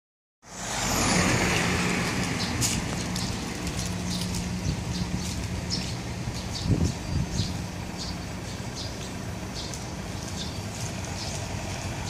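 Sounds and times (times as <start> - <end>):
city traffic rumble: 0.4 - 12.0
vehicle passing: 0.4 - 12.0.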